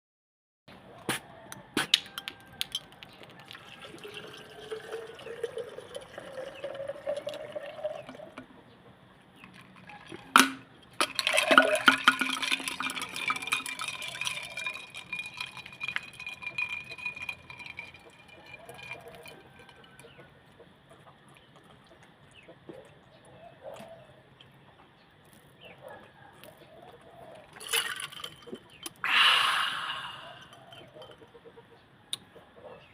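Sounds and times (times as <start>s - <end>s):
carbonation fizzing and crackling: 2.7s - 8.2s, 11.0s - 20.0s
soda pouring into a glass: 3.4s - 8.4s, 9.8s - 20.1s, 27.5s - 30.8s.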